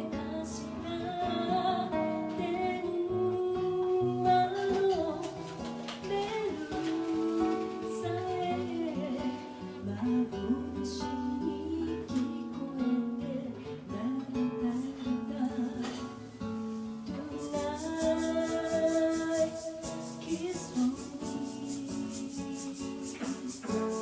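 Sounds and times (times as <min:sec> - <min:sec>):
person singing: 0:00.0 - 0:16.3, 0:17.1 - 0:24.0
strummed acoustic guitar: 0:00.0 - 0:24.0
rattling shaker: 0:04.5 - 0:09.7, 0:15.9 - 0:24.0.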